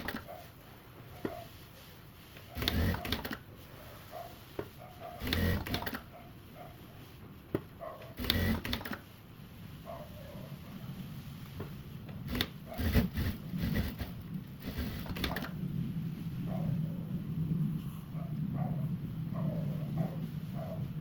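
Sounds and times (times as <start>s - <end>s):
sewing machine stitching: 0.0s - 0.3s, 2.6s - 3.4s, 5.2s - 6.0s, 8.2s - 9.0s, 12.2s - 15.6s.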